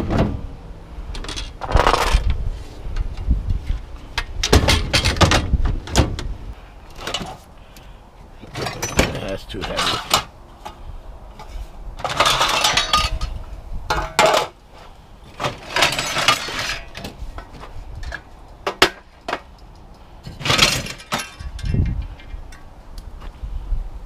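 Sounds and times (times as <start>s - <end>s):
wind rumble on microphone: 0.0s - 6.6s, 10.7s - 14.0s, 17.0s - 18.3s, 21.3s - 24.0s
aluminum scrap clanking and scraping: 4.0s - 6.2s, 6.9s - 7.4s, 8.4s - 14.6s, 15.3s - 19.5s, 20.3s - 22.6s.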